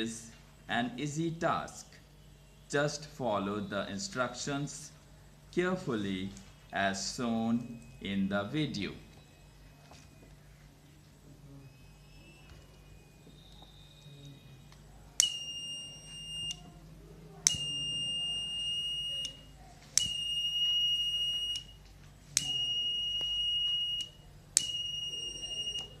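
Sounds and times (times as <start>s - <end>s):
high-pitched alarm beeps: 6.5s - 10.4s, 11.6s - 16.7s, 17.5s - 26.0s.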